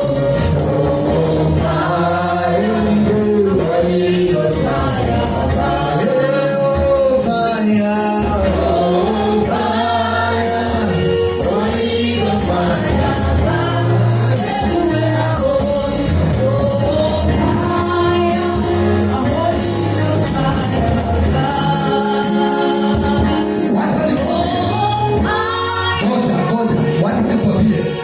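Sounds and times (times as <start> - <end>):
voices singing together: 0.0 - 26.7
steady bass line: 0.0 - 28.0.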